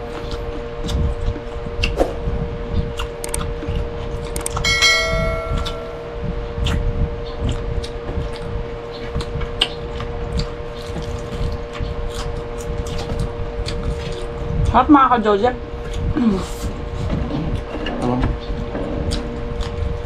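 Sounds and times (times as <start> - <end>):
chewing: 0.0 - 2.0, 2.8 - 4.6, 6.6 - 14.7, 15.8 - 20.0
steady hum: 0.0 - 20.0
tableware ringing: 4.6 - 6.2.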